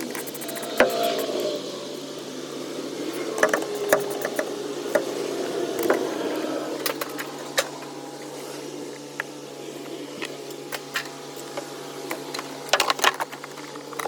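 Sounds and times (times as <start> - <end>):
hand tools clicking and knocking: 3.4 - 5.1.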